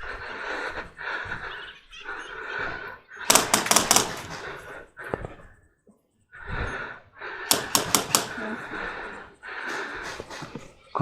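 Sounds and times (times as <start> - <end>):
airsoft gun rapid shots: 3.2 - 4.5, 7.5 - 8.5.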